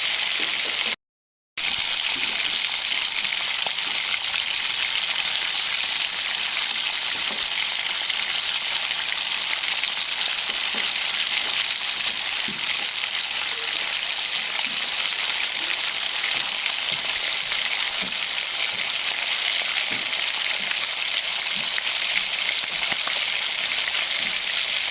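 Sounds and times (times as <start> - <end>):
food sizzling in hot oil: 0.0 - 1.0, 1.6 - 24.9
small crackles of oil: 21.4 - 24.9.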